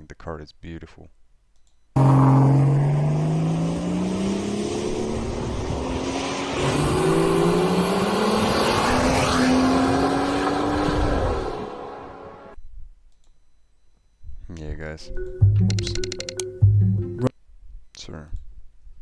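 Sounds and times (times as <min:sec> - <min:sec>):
car engine accelerating: 0:02.0 - 0:12.6.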